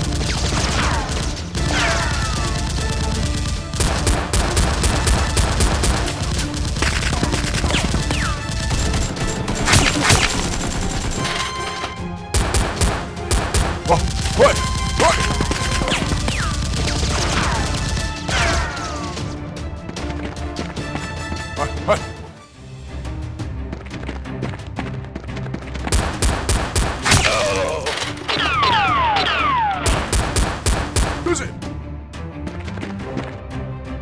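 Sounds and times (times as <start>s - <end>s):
rapid gunfire: 0.0s - 19.4s, 25.9s - 27.6s, 28.2s - 31.2s
background music: 0.0s - 34.0s.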